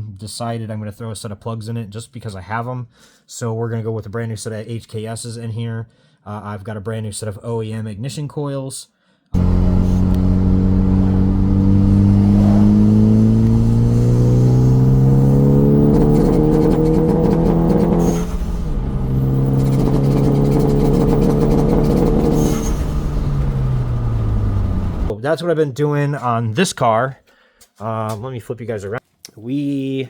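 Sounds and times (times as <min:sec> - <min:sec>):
car engine accelerating: 0:09.4 - 0:25.1.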